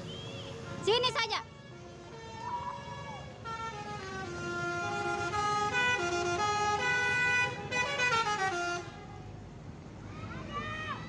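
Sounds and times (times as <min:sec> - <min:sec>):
multi-trumpet bus horn tune: 0:03.4 - 0:09.1.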